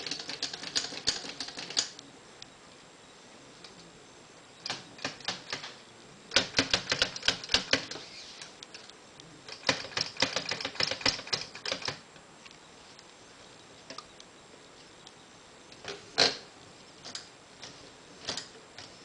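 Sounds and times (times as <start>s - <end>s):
typewriter keys clacking: 0.0s - 2.0s, 6.4s - 8.0s, 9.5s - 12.0s.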